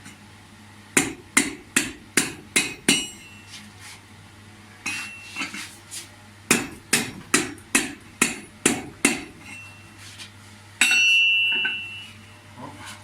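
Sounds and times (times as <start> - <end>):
hammer striking metal: 1.0 - 3.3, 6.5 - 9.6, 10.8 - 12.0
ringing metal clang: 9.4 - 9.8, 10.8 - 12.4.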